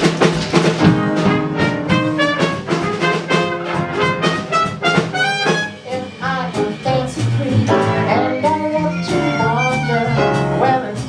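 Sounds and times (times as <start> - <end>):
brass melody: 0.0 - 11.0
swing jazz band: 0.0 - 11.0
bass line: 0.7 - 11.0.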